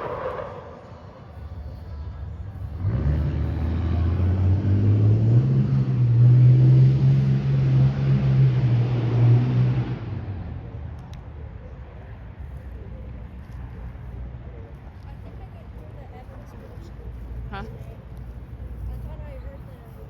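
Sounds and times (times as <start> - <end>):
vehicle engine accelerating: 0.0 - 11.0.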